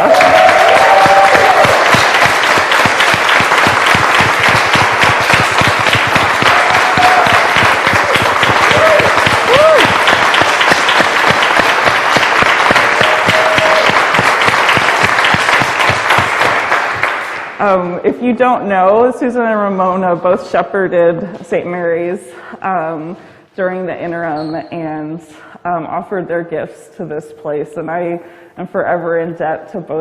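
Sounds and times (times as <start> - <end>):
crowd applauding: 0.0 - 17.6.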